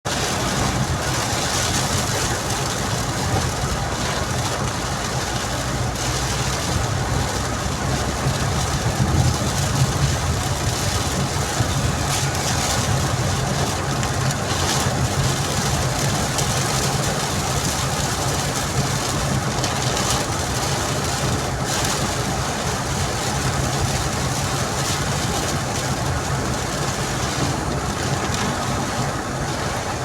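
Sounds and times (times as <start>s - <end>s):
heavy rain hissing: 0.1s - 30.0s
low steady rumble: 2.1s - 16.3s.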